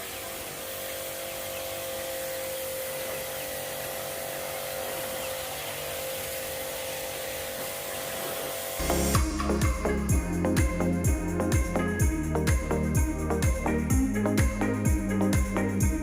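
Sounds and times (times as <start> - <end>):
pressure washer motor hum: 0.0 - 16.0
water spray hissing: 0.2 - 11.8.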